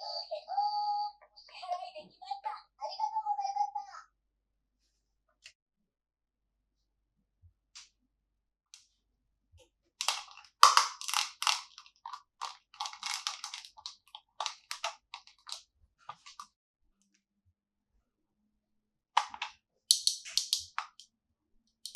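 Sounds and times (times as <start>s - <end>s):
plastic crinkling: 10.0s - 16.5s.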